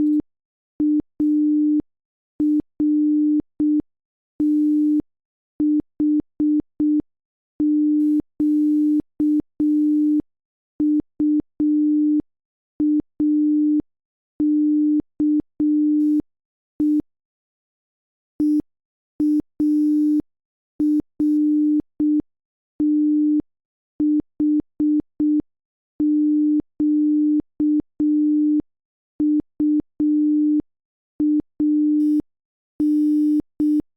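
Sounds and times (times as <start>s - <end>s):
morse code sine tone: 4.4s - 5.0s, 7.6s - 10.2s, 10.8s - 12.2s, 12.8s - 13.8s, 14.4s - 16.2s, 16.8s - 17.0s, 18.4s - 18.6s, 19.2s - 20.2s, 20.8s - 22.2s, 22.8s - 23.4s, 31.2s - 33.9s.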